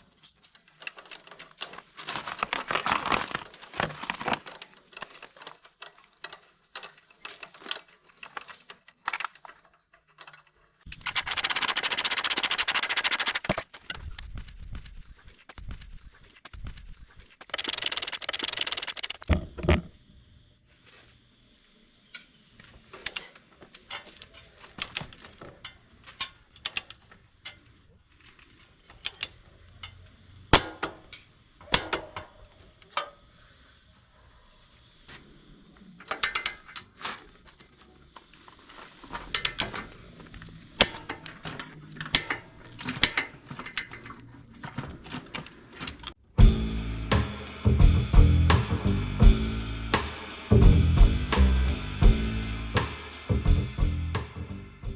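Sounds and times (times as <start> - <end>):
hand tools clicking on metal: 0.0 - 19.9, 22.9 - 33.4, 36.0 - 46.2
loud hissing burst: 46.5 - 53.4.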